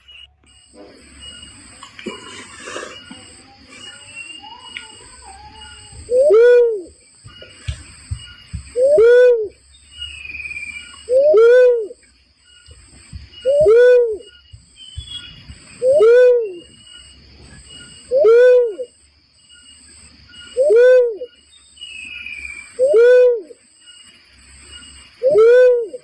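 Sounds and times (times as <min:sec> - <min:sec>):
faint high-pitched buzzing: 0:00.0 - 0:26.0
dove hooting: 0:02.4 - 0:12.0, 0:12.7 - 0:17.0, 0:17.6 - 0:19.0, 0:20.4 - 0:21.4, 0:22.6 - 0:23.6, 0:25.2 - 0:26.0.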